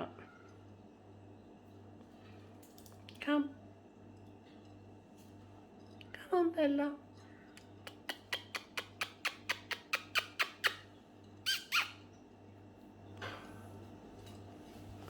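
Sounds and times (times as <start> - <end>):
parrot calls: 8.0 - 12.0
parrot squawks: 11.4 - 12.0.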